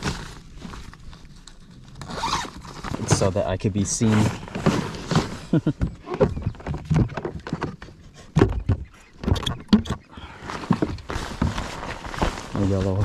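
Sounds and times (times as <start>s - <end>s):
jacket rustling: 2.1s - 5.6s.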